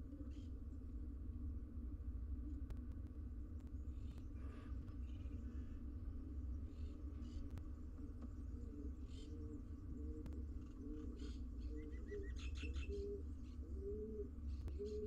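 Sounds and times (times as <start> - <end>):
steady low hum: 0.0 - 15.0
small birds chirping: 6.4 - 15.0
pigeons cooing: 8.4 - 15.0.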